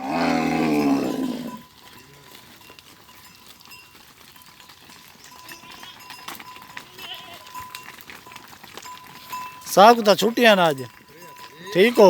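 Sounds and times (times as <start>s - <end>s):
farm animal long call: 0.0s - 2.4s.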